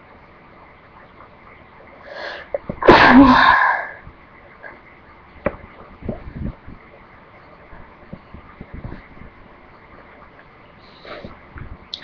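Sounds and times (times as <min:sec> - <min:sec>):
person sneezing: 0:02.8 - 0:03.9.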